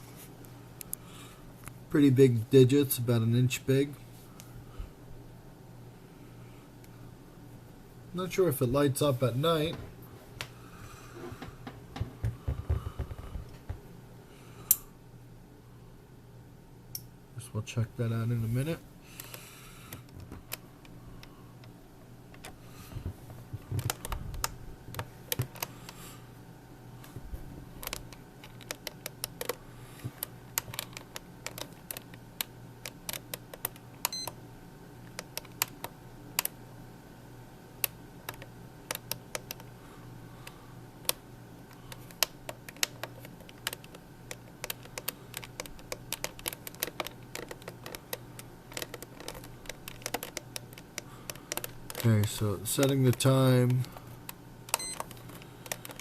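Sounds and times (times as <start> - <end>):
steady low hum: 0.0 - 56.0
plastic buttons clicking: 30.6 - 32.2, 41.9 - 52.1.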